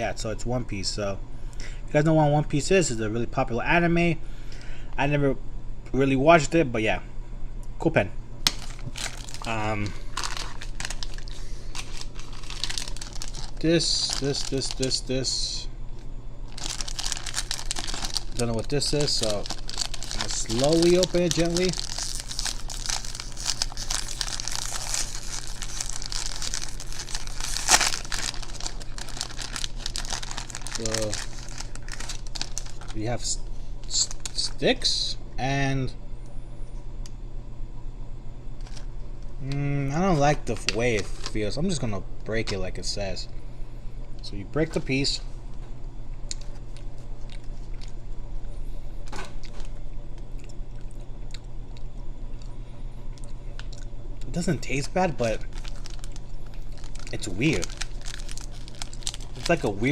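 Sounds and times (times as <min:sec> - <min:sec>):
low electrical hum: 0:00.0 - 0:59.9
plastic wrapper crinkling: 0:08.5 - 0:15.1, 0:16.5 - 0:33.1, 0:55.2 - 0:59.9
person chewing candy: 0:08.6 - 0:14.9, 0:16.5 - 0:33.0, 0:46.3 - 0:48.0, 0:50.2 - 0:54.3, 0:55.4 - 0:59.8.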